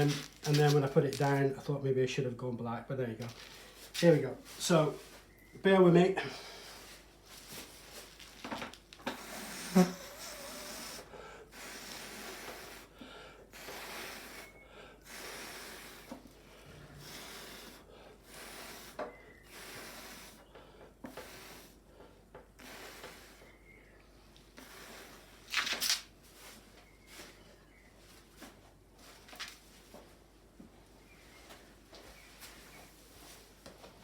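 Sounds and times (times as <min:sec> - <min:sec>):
breath blown through a straw: 0:09.1 - 0:16.2, 0:16.8 - 0:20.5, 0:21.1 - 0:21.9, 0:22.6 - 0:23.7, 0:24.6 - 0:25.4.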